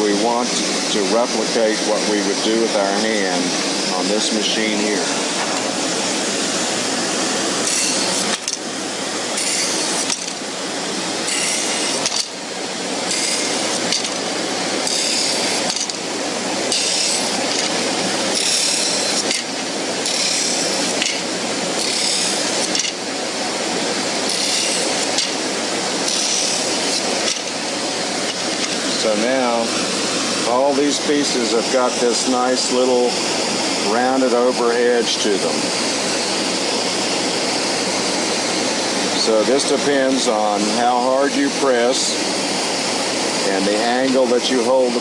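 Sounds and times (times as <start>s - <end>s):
wood grinding against sander: 0.0s - 32.8s
drum sander running: 0.0s - 45.0s.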